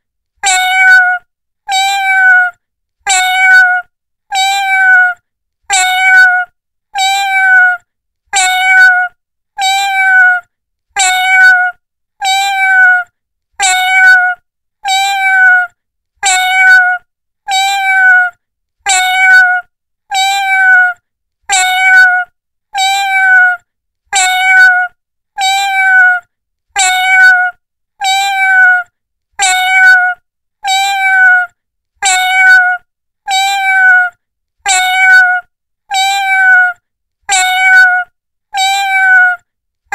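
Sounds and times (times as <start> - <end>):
cat meowing: 0.4 - 10.4, 11.0 - 39.4.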